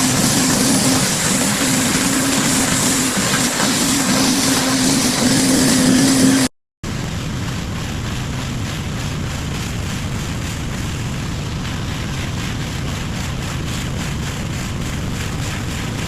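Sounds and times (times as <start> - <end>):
pressure washer pump humming: 0.0 - 6.5
water spray hissing: 0.0 - 6.5.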